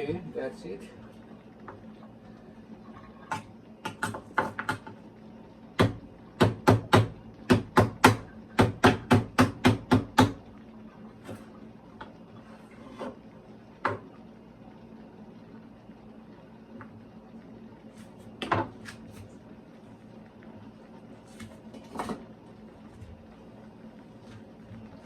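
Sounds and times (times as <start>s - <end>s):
knocks on hard kitchen surface: 5.8s - 10.4s.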